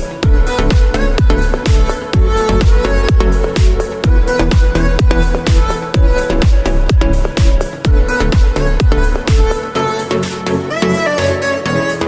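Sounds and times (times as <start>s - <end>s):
electronic music: 0.0s - 12.0s.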